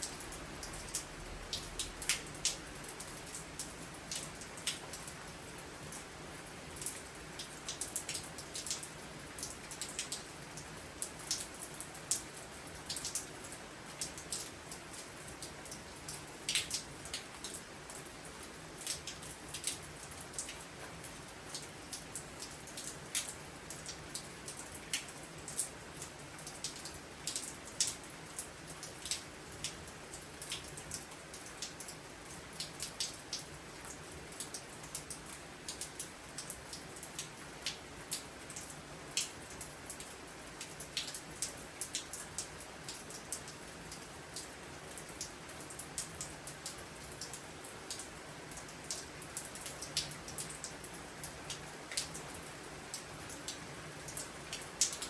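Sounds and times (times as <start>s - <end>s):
raindrops tapping on surface: 0.0s - 6.1s, 6.8s - 55.0s
rain hiss: 0.0s - 55.0s.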